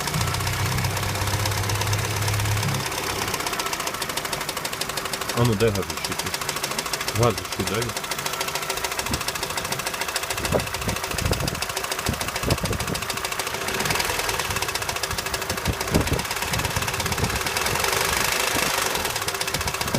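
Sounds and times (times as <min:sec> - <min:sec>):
petrol engine knocking: 0:00.0 - 0:19.9.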